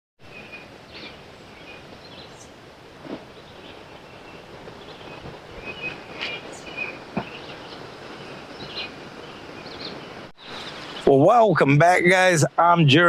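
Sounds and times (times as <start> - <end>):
bird chirps: 0.2 - 2.5, 3.1 - 11.2
steady background noise: 0.2 - 13.0.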